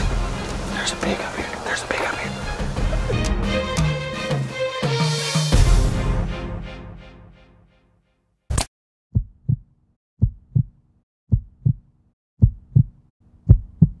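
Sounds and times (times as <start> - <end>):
heartbeat thuds: 9.1 - 14.0.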